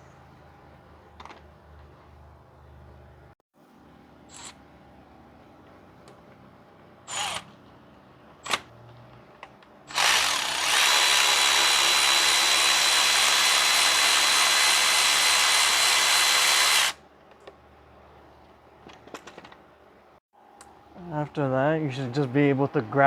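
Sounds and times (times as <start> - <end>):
power tool motor whining: 7.1 - 7.5, 9.9 - 17.0.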